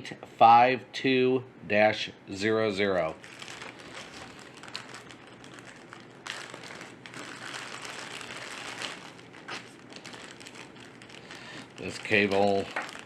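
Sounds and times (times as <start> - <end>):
plastic packaging crinkling: 3.1 - 13.0.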